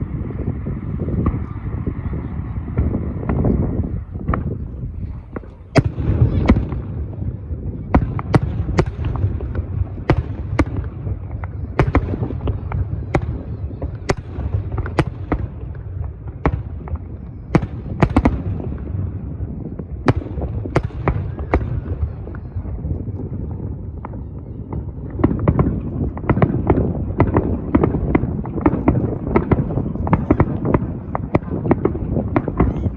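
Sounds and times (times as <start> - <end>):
continuous low rumble: 0.0 - 32.9
fireworks bangs: 0.0 - 32.9.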